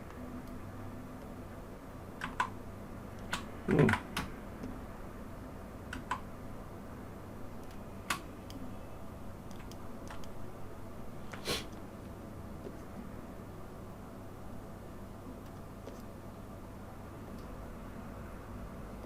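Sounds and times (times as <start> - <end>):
keyboard key presses: 2.2 - 2.6.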